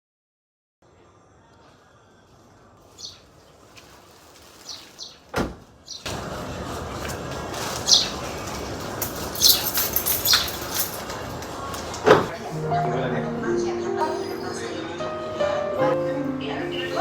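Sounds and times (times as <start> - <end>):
steady background noise: 0.8 - 17.0
thud: 5.4 - 6.2.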